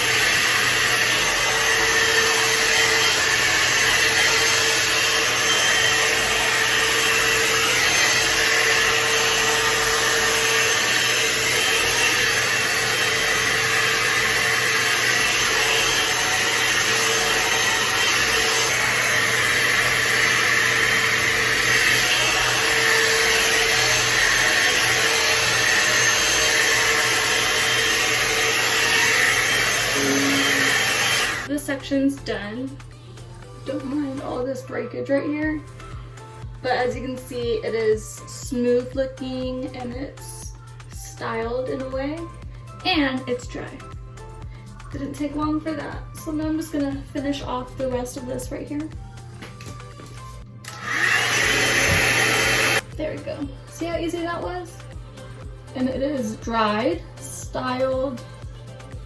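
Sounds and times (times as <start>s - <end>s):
hair dryer brush blowing air: 0.0s - 31.6s, 50.0s - 52.9s.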